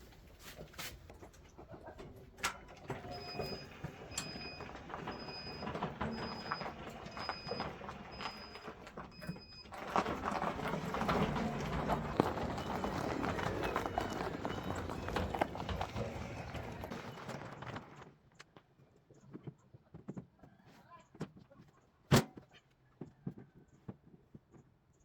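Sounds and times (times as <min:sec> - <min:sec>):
clattering and knocking: 0:01.1 - 0:18.0
loud rumbling clatter: 0:03.0 - 0:18.0.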